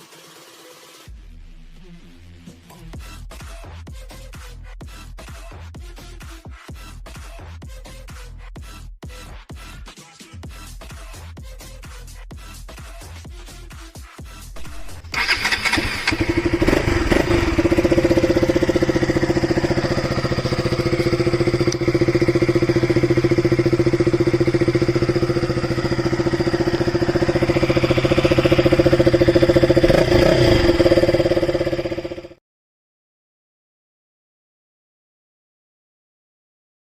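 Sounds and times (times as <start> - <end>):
motorcycle engine starting and idling: 14.6 - 32.4.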